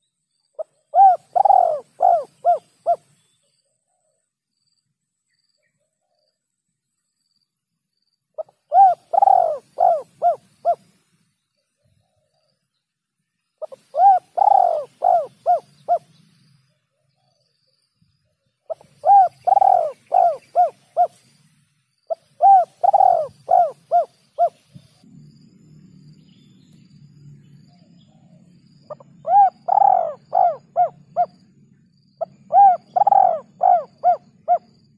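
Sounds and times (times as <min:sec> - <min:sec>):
dove cooing: 0:00.6 - 0:03.0, 0:08.4 - 0:10.9, 0:13.6 - 0:16.2, 0:18.7 - 0:21.2, 0:22.1 - 0:24.9, 0:28.9 - 0:31.4, 0:32.2 - 0:34.8
faint low hum: 0:23.1 - 0:34.9.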